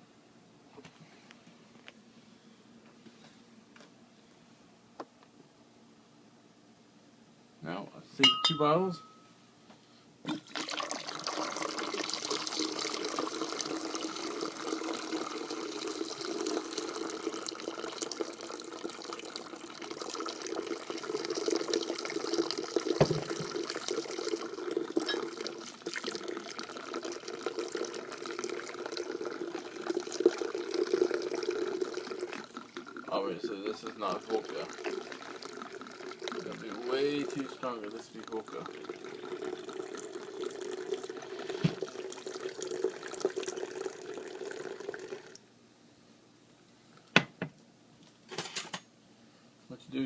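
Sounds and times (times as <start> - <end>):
liquid pouring into a pitcher: 10.3 - 45.4.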